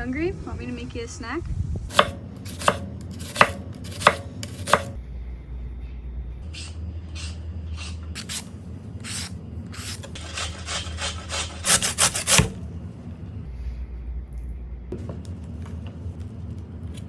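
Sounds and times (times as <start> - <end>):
cheese grating on hand grater: 9.1 - 12.4.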